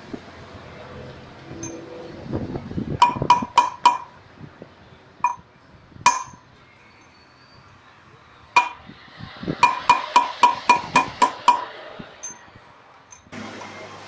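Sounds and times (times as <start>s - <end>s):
hammer blows on metal: 3.0s - 4.2s, 5.2s - 5.5s, 6.1s - 7.2s, 8.6s - 9.0s, 9.6s - 12.5s.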